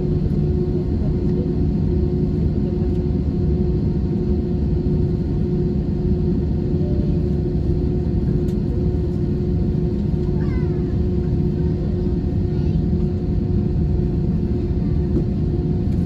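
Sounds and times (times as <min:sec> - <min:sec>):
airliner cabin rumble and hum: 0:00.0 - 0:16.0.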